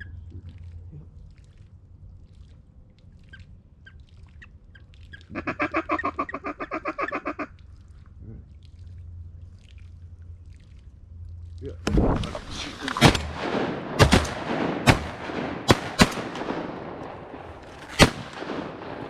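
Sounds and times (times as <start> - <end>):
waterfowl chirping: 3.2 - 7.6
duck quacking rapidly: 5.2 - 7.5.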